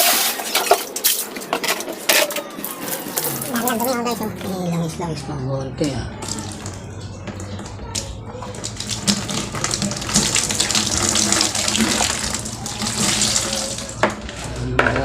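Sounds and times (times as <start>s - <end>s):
liquid running and splashing: 8.5s - 14.4s.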